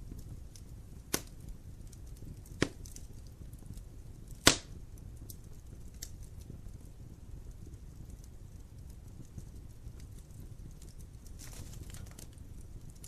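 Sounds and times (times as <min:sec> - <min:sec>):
burning wood popping: 0:00.0 - 0:13.0
low rumble of fire: 0:00.0 - 0:13.0
wood fire crackling: 0:00.0 - 0:13.0.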